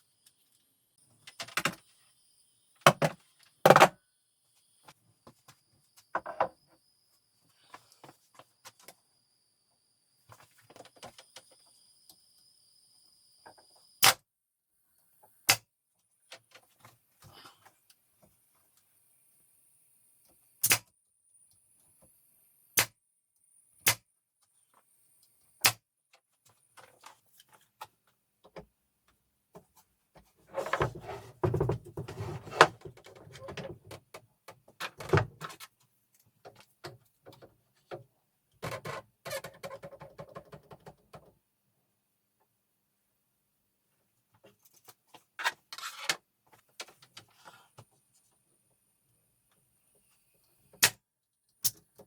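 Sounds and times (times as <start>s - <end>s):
clattering and rubbing: 30.4s - 33.9s.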